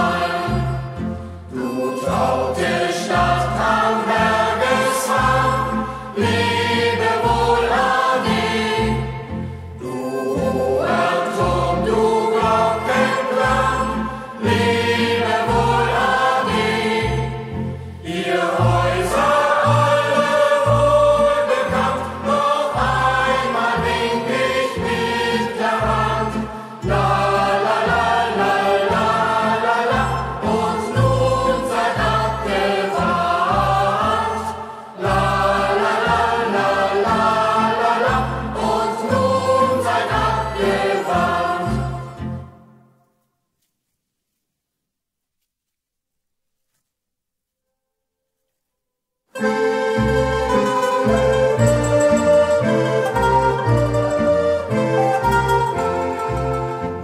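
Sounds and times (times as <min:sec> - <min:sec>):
youth choir singing: 0:00.0 - 0:42.3
bass accompaniment: 0:10.4 - 0:42.4, 0:49.4 - 0:57.0.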